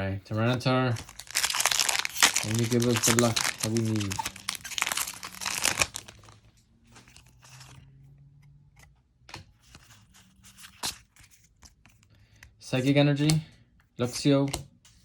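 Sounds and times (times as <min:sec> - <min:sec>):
cards rustling and clicking: 0:00.4 - 0:07.8, 0:08.8 - 0:12.5
foil wrapper tearing and crinkling: 0:00.9 - 0:06.4.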